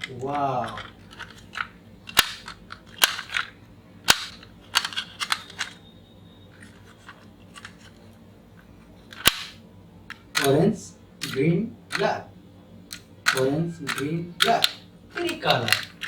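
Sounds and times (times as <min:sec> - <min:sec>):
plastic toy trucks clicking and knocking: 0:00.0 - 0:05.8, 0:12.9 - 0:16.0.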